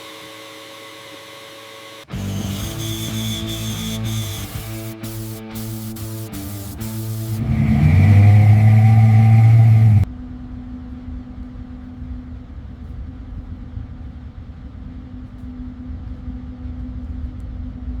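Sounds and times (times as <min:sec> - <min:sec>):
vehicle engine idling: 0:05.0 - 0:10.1.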